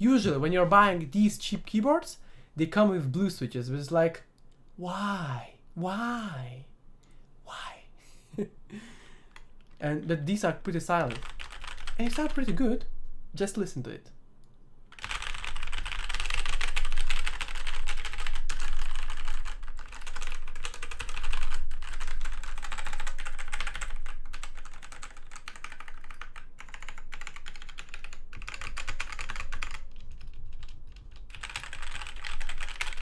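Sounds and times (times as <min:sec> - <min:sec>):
mechanical keyboard typing: 0:10.8 - 0:12.7, 0:14.9 - 0:33.0.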